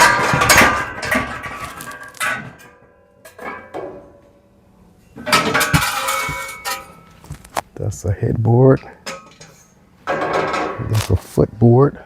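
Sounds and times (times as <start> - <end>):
metal bed frame parts clattering: 0.0 - 4.2, 5.2 - 7.4, 8.7 - 11.2.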